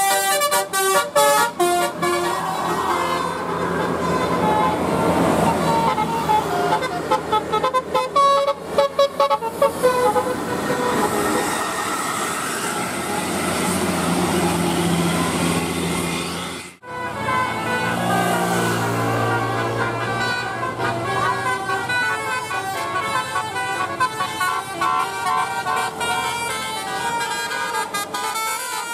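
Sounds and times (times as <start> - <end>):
bus horn playing a quick melody: 0.0 - 15.6, 16.2 - 28.9
bus engine running: 0.0 - 28.9.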